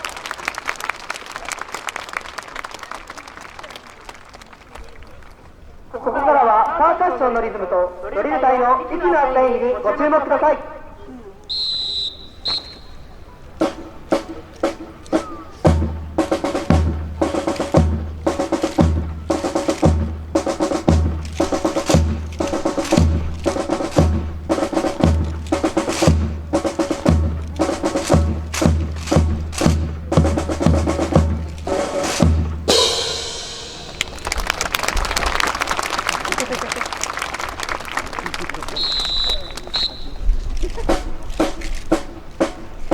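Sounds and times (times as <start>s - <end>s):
whistle blasts: 11.4s - 13.4s, 38.6s - 40.4s
snare drum strikes: 13.6s - 34.2s
bass drum beating: 14.8s - 34.2s.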